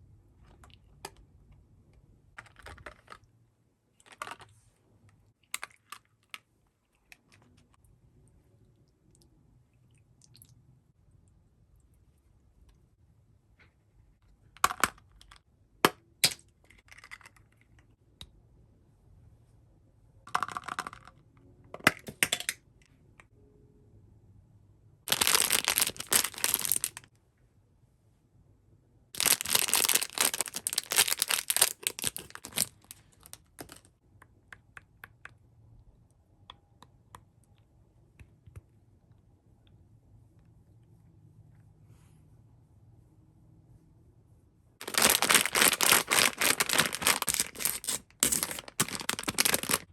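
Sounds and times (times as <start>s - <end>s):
plastic wrapping crinkling and tearing: 25.1s - 27.1s, 29.2s - 33.8s, 44.8s - 49.9s
packaging clicks and taps: 29.2s - 35.4s, 44.8s - 49.9s.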